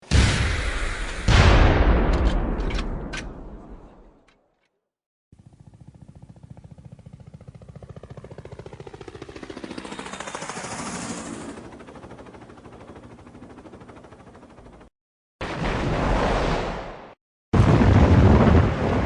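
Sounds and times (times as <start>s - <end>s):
explosion rumble: 17.6s - 19.0s.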